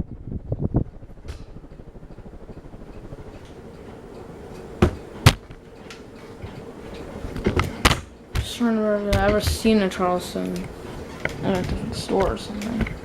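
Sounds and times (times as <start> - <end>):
ceiling fan humming: 0.0 - 13.0
sharp knocks: 4.8 - 5.6.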